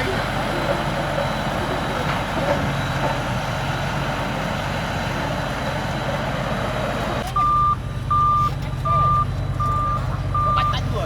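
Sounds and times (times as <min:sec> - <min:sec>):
bulldozer diesel engine running: 0:00.0 - 0:11.0
reverse alarm beeping: 0:07.4 - 0:10.9.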